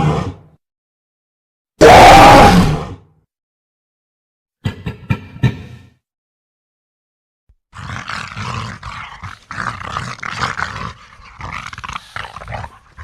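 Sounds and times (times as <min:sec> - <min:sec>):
growling creature roar: 0:00.0 - 0:00.5, 0:01.8 - 0:03.0, 0:07.8 - 0:13.0.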